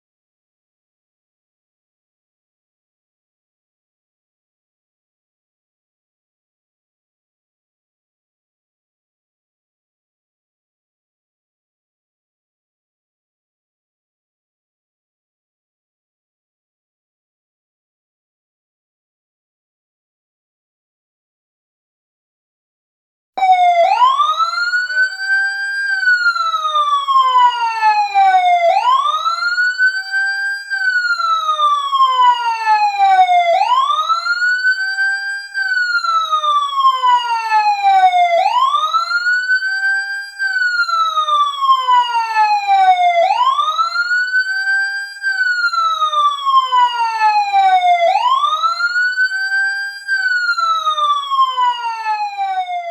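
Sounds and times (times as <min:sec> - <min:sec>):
fire truck siren wail: 0:23.4 - 0:52.9.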